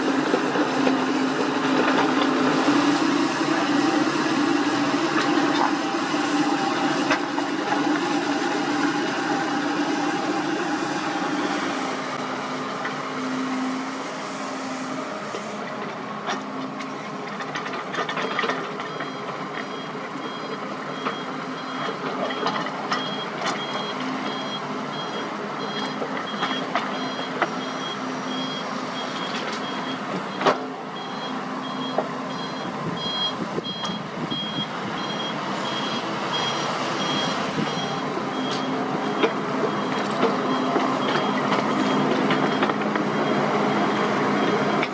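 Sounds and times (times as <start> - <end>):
diesel engine running: 0.0 - 44.9
backup alarm beeping: 18.2 - 44.8.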